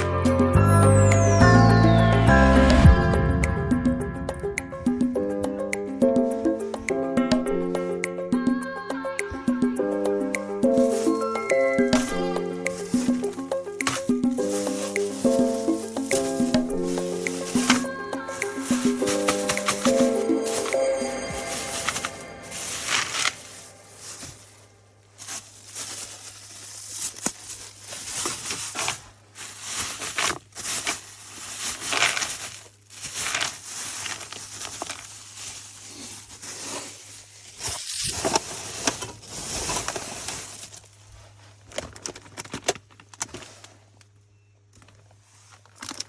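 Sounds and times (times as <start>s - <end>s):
rustling and crinkling: 10.6s - 46.0s.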